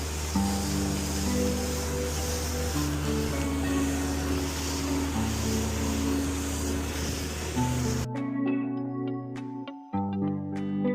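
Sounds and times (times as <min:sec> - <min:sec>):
steady rushing noise: 0:00.0 - 0:08.1
music with plucked notes: 0:00.0 - 0:10.9.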